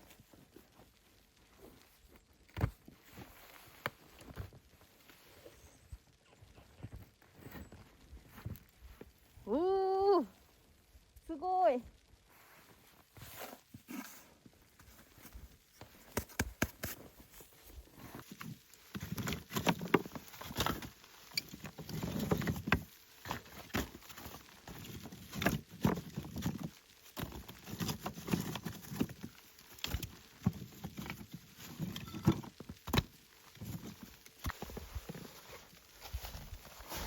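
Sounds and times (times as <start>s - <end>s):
footsteps crunching in deep snow: 33.5s - 37.0s.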